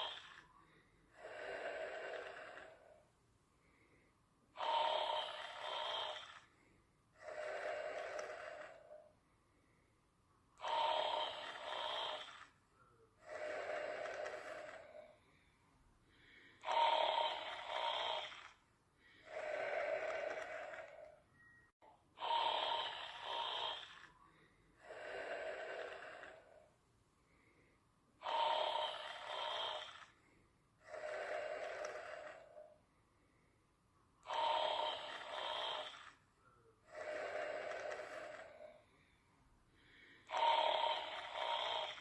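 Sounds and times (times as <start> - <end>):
person snoring: 0.0 - 3.0, 4.5 - 9.1, 10.6 - 12.6, 13.2 - 15.2, 16.1 - 21.2, 22.2 - 26.7, 28.2 - 32.8, 34.2 - 39.1, 39.8 - 42.0.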